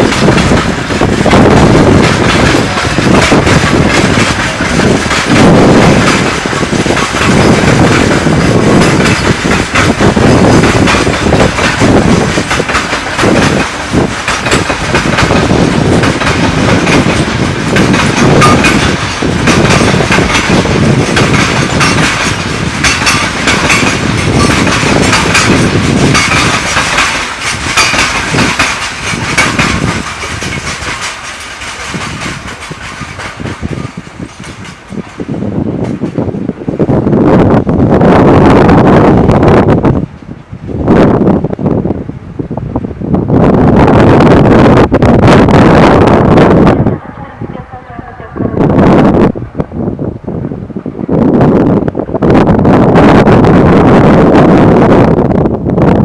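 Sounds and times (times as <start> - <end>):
train wheels clattering over rail joints: 0.0 - 37.1.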